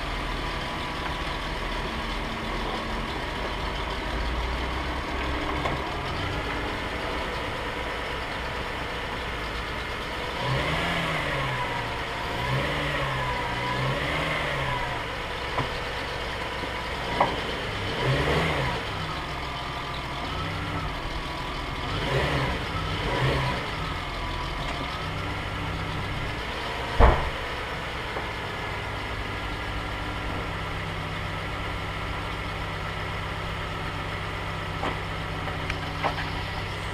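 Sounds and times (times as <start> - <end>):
car engine revving: 0.0 - 36.9
sharp thumps: 27.0 - 27.4.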